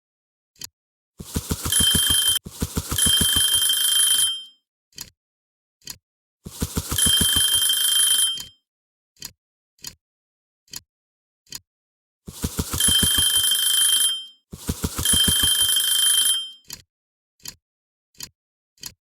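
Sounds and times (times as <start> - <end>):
clock ticking: 1.2 - 3.7, 5.8 - 7.7, 12.3 - 13.7, 14.6 - 16.8
bell alarm clock ringing: 1.3 - 4.6, 6.6 - 8.5, 12.4 - 16.6.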